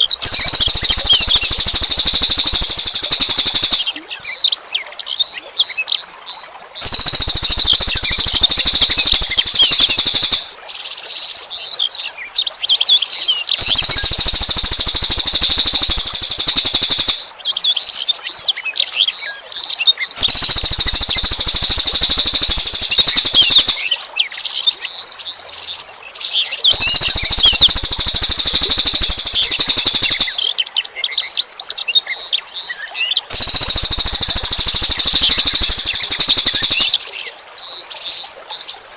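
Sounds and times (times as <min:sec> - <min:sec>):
high twittering chirps: 0:00.0 - 0:04.0, 0:06.8 - 0:11.3, 0:12.8 - 0:18.2, 0:20.2 - 0:24.8, 0:25.6 - 0:30.4, 0:33.3 - 0:38.8
songbird buzzing rattles: 0:00.3 - 0:03.8, 0:06.8 - 0:10.4, 0:13.6 - 0:17.2, 0:20.2 - 0:23.8, 0:26.7 - 0:30.3, 0:33.3 - 0:37.0.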